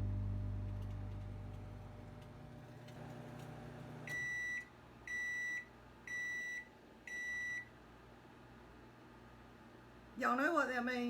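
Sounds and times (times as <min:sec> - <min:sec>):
microwave oven humming: 0:00.0 - 0:10.0
microwave beeps: 0:03.9 - 0:07.7.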